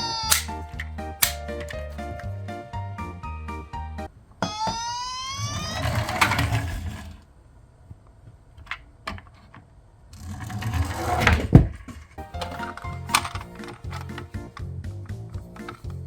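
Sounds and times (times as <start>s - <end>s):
toy cars rolling with rattling whir: 5.2s - 7.3s, 10.1s - 14.3s.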